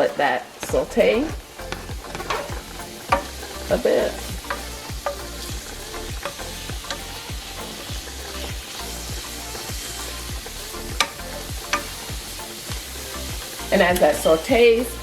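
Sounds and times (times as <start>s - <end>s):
vegetables sizzling in a frying pan: 0.0s - 15.0s.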